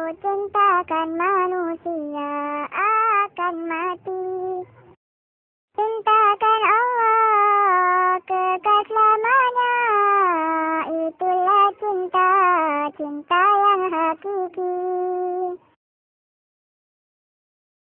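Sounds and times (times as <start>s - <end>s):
high voice singing slow melody: 0.0s - 4.7s, 5.8s - 15.8s.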